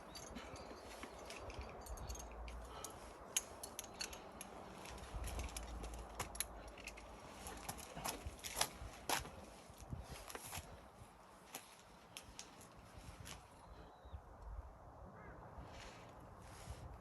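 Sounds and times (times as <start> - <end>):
wind rumble on microphone: 0.0 - 6.6, 7.3 - 11.2, 14.0 - 17.0
light clicks and clinks: 0.0 - 8.8.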